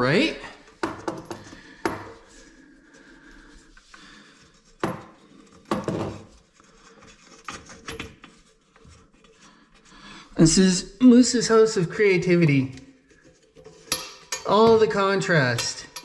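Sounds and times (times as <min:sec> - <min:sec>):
hardware clinks and knocks: 0:13.6 - 0:16.0.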